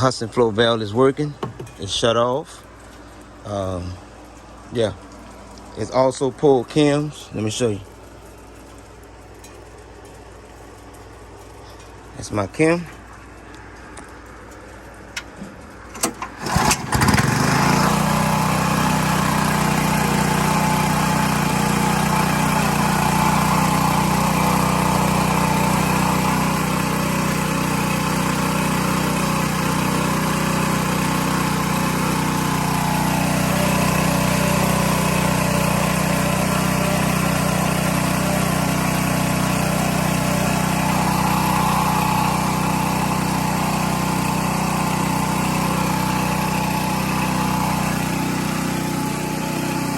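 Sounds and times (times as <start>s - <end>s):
small gasoline engine starting: 15.2s - 49.9s.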